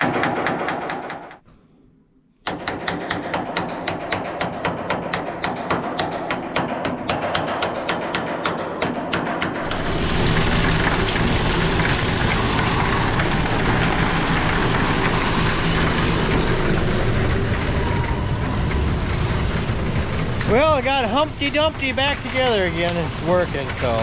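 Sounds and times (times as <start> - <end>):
silo unloader mechanical hum: 9.6 - 24.0.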